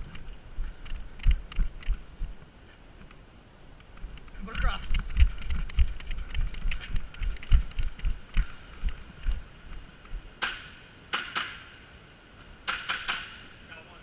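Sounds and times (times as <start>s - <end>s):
airsoft guns firing: 10.4s - 11.9s, 12.6s - 13.6s.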